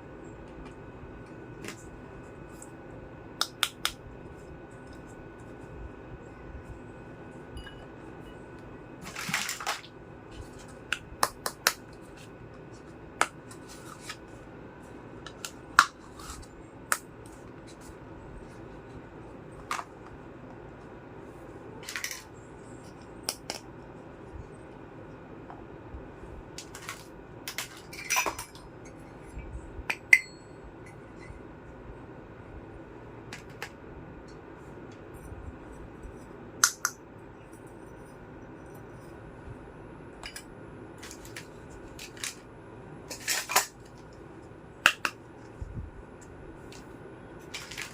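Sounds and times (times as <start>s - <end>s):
toy kitchenware clicking and clattering: 9.0s - 9.9s, 21.8s - 22.3s, 26.6s - 28.6s, 41.0s - 42.4s, 43.1s - 44.0s, 47.5s - 47.9s
rustling and scraping: 12.0s - 14.5s, 46.7s - 47.9s.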